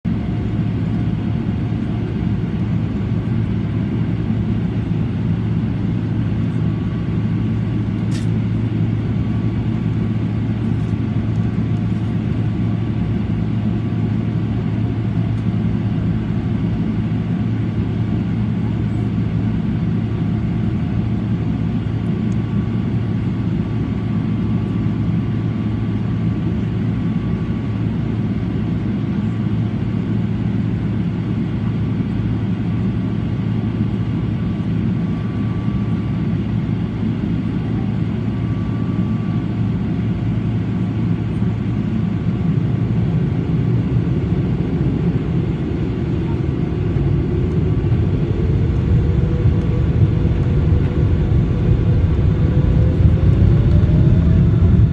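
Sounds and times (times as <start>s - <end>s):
airplane cabin engine rumble: 0.0s - 54.9s
rising engine whine: 32.8s - 54.9s.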